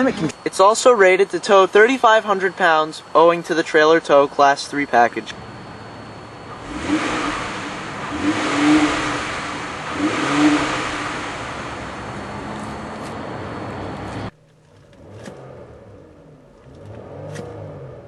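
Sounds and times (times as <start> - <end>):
car engine idling: 0.0 - 16.9
car engine revving: 5.3 - 18.0.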